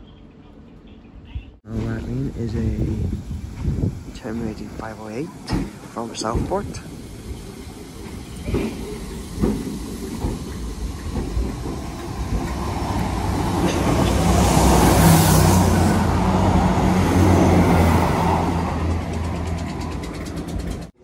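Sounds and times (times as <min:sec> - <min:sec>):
electric train hum and hiss: 0:00.0 - 0:20.6
train wheel knocks on rail joints: 0:08.4 - 0:12.7.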